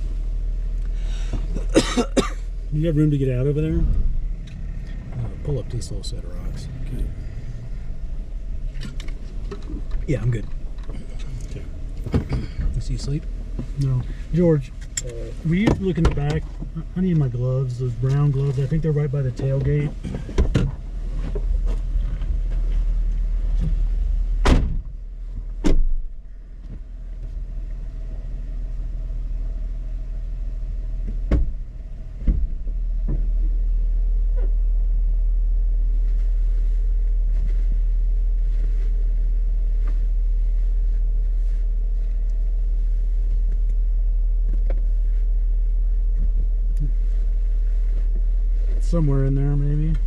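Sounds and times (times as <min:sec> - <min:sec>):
car engine idling: 0:00.0 - 0:50.0
sharp knocks and thuds: 0:12.0 - 0:12.8, 0:15.6 - 0:16.7, 0:19.6 - 0:22.6, 0:24.4 - 0:26.8, 0:31.0 - 0:33.4.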